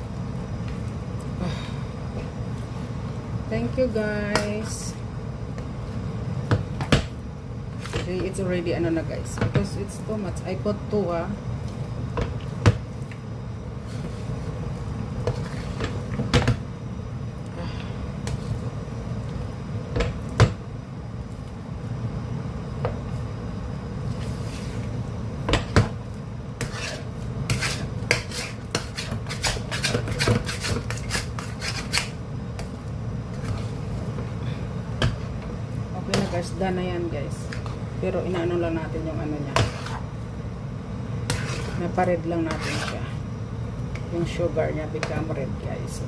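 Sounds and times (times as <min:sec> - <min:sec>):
steady low hum: 0:00.0 - 0:46.0
utensil scraping cooking pot: 0:15.2 - 0:16.0, 0:26.6 - 0:32.2, 0:36.0 - 0:36.6, 0:39.4 - 0:40.1, 0:41.2 - 0:43.2.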